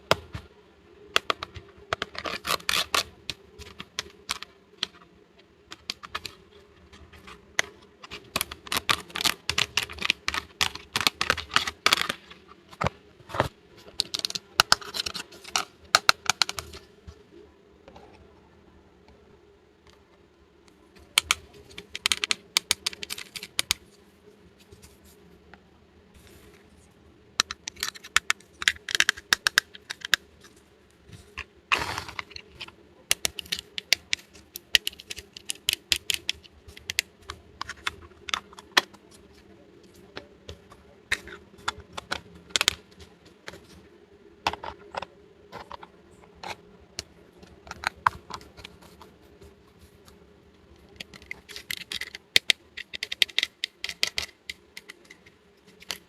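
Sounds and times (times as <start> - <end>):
plastic toy pieces clicking: 1.2 - 5.0, 5.7 - 6.4, 7.1 - 12.9, 14.0 - 16.8, 21.1 - 23.8, 27.4 - 30.6, 31.4 - 43.6, 44.5 - 49.1, 50.8 - 56.0.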